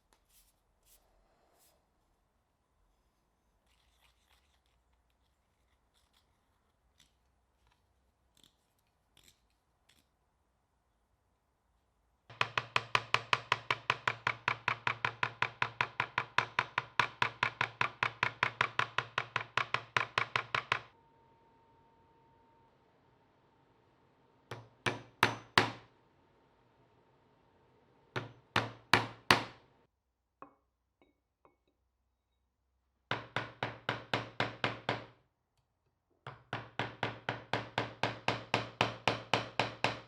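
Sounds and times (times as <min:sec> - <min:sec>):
hammer striking chisel: 0:12.3 - 0:21.0, 0:24.5 - 0:25.9, 0:28.1 - 0:29.7, 0:33.1 - 0:35.2, 0:36.2 - 0:40.0.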